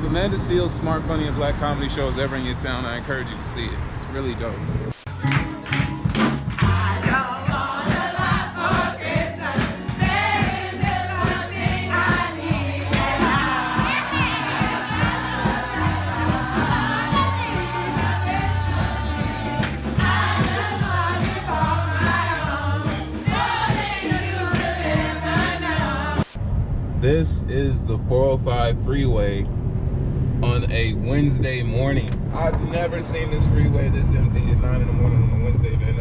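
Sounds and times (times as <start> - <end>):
background music with beat and bass: 5.1 - 26.4
voices singing together: 5.1 - 26.4.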